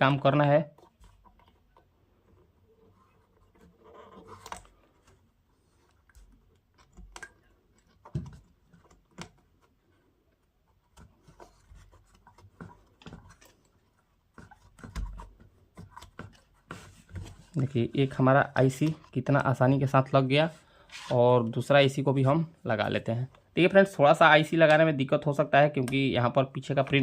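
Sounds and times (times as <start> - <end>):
faint scratching: 0.3 - 6.5, 9.5 - 22.4.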